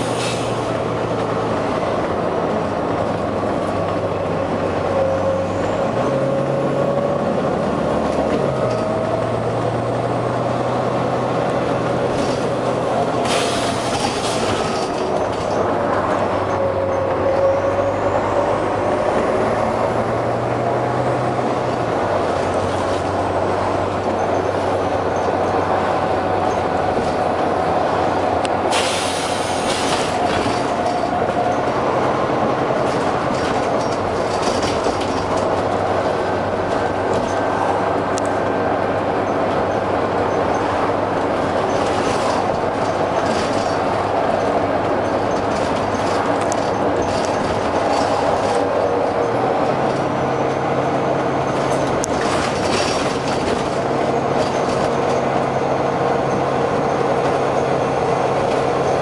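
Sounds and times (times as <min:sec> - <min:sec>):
bus diesel engine running: 0:00.0 - 0:59.0
compressed air hiss: 0:28.7 - 0:30.1.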